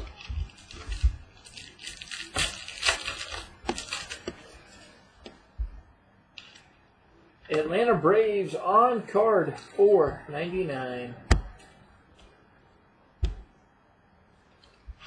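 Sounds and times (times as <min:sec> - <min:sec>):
trading cards rustling and sliding: 0:00.0 - 0:05.4.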